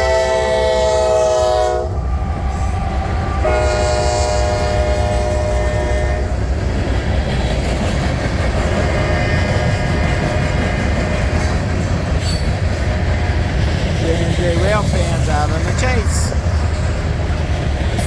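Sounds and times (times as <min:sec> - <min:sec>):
locomotive air horn blasts: 0:00.0 - 0:02.0, 0:03.4 - 0:06.3
low rumble of train rolling: 0:00.0 - 0:18.0.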